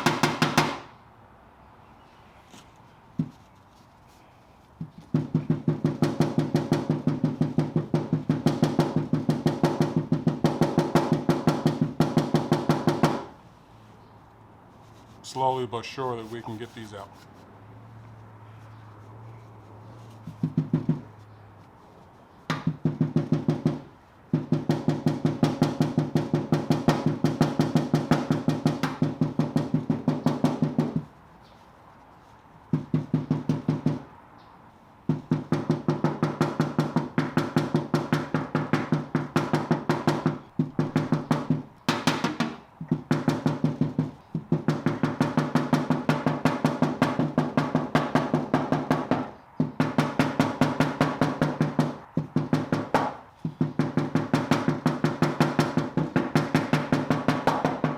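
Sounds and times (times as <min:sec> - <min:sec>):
hammer tapping sheet metal: 0:00.0 - 0:01.0, 0:04.9 - 0:13.3, 0:22.5 - 0:31.1, 0:35.1 - 0:57.9.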